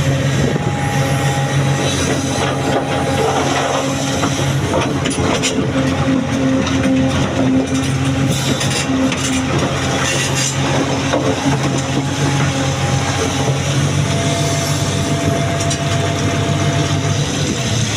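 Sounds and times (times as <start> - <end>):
excavator diesel engine running: 0.0 - 17.9
stone and steel rattling: 7.2 - 12.0.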